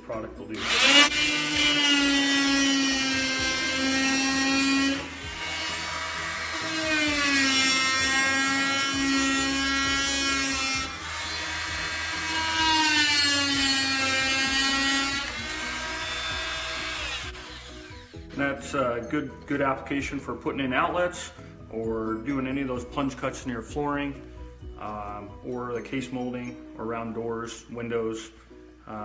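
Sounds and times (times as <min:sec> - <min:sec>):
multi-tool buzzing cutting wood: 0:00.5 - 0:18.3.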